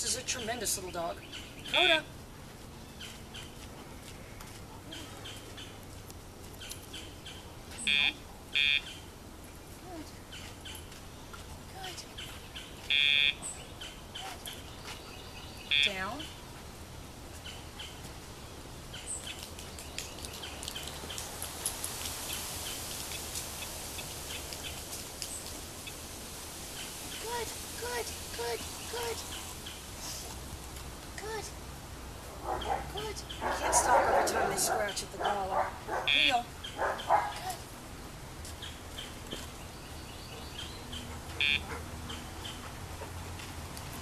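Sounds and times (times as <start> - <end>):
birds chirping faintly: 17.3 - 30.5.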